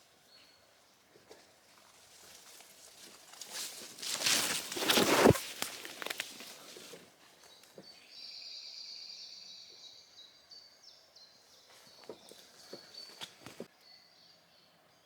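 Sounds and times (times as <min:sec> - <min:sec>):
songbird singing: 0:00.0 - 0:01.8, 0:04.9 - 0:15.0
footsteps crunching through leaves: 0:01.9 - 0:07.0.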